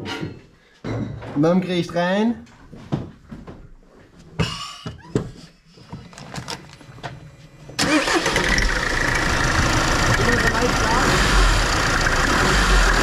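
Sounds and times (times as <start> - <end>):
loud compressor clatter: 7.8 - 13.0
van engine starting and running: 7.8 - 13.0.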